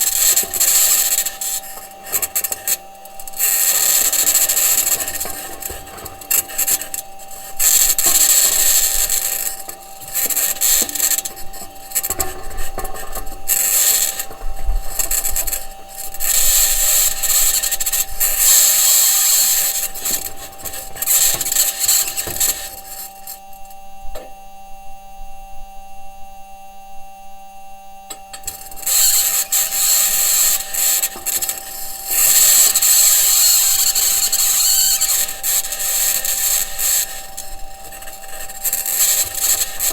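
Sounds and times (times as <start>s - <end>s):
wheels grinding over rock: 0.0s - 23.3s
steady hum: 0.0s - 39.9s.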